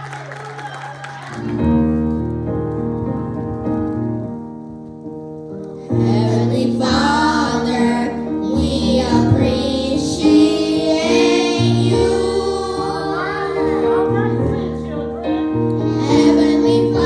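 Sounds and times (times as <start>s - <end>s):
church keyboard playing: 0.0s - 17.0s
bass: 5.8s - 17.0s
children and women singing gospel: 5.8s - 17.0s.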